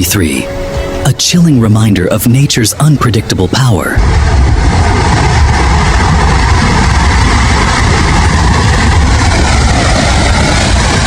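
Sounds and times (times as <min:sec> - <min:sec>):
deep continuous rumble: 0:00.0 - 0:11.0
mudflow churning: 0:03.8 - 0:11.0.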